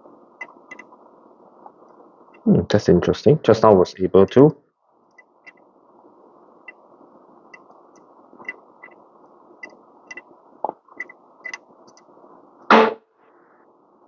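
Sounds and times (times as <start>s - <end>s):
short knock: 12.7s - 13.0s.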